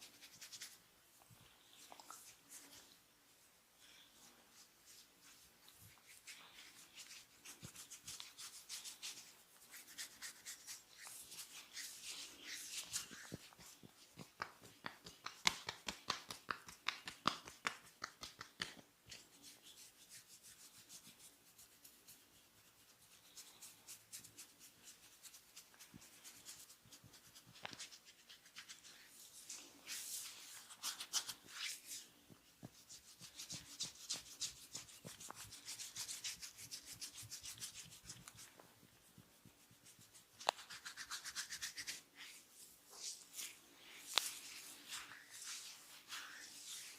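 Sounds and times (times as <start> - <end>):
hands rubbing through hair: 0.0 - 0.8, 1.6 - 3.0, 4.1 - 46.9.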